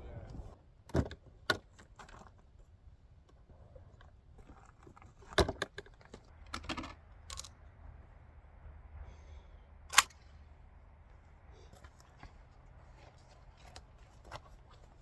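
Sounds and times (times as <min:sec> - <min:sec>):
metallic clicks and rattles: 0:05.4 - 0:07.6.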